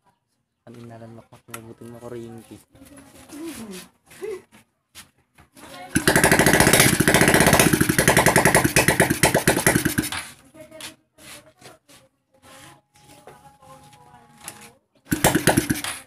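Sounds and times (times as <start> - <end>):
motorcycle engine running: 5.9 - 10.4, 15.1 - 16.0.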